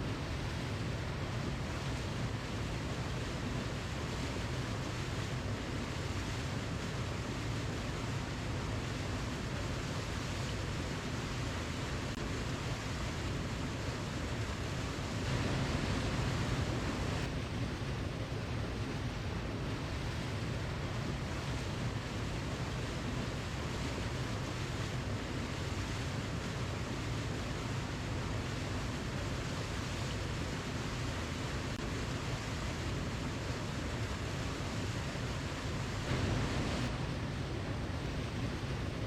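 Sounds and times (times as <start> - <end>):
waterfall rushing: 31.5 - 39.0.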